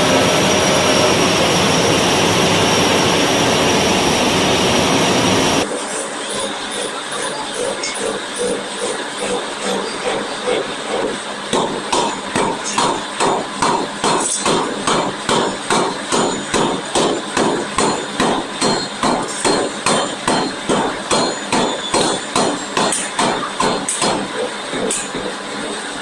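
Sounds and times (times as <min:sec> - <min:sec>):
forging hammer striking: 0:11.5 - 0:25.3.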